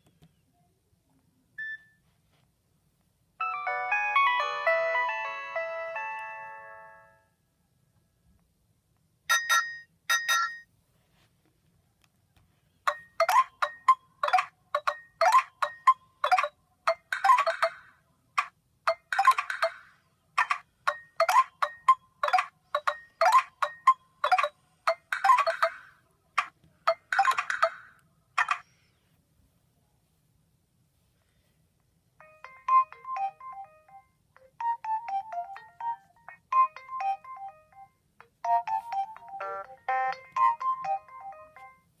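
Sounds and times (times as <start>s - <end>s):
phone ringtone melody: 3.4s - 7.3s, 12.9s - 17.8s, 20.9s - 25.9s, 32.2s - 42.0s.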